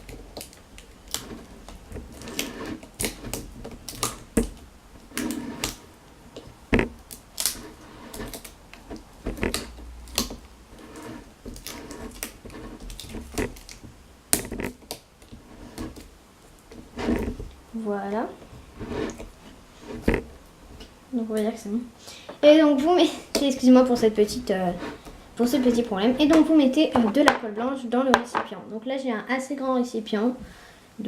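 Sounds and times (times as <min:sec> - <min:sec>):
clicks and crackles of handling: 0:00.0 - 0:17.6
adhesive tape pulled off roll: 0:06.8 - 0:16.1.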